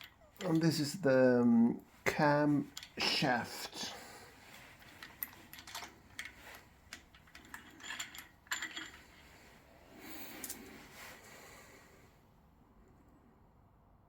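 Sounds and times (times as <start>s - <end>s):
metal engine parts clinking: 0.0s - 0.8s, 2.7s - 3.0s, 4.6s - 9.6s.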